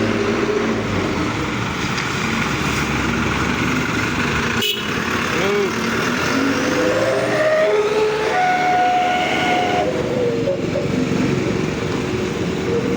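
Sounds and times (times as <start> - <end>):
heavy vehicle rumbling: 0.0 - 12.9
horn-like tone: 7.1 - 10.0.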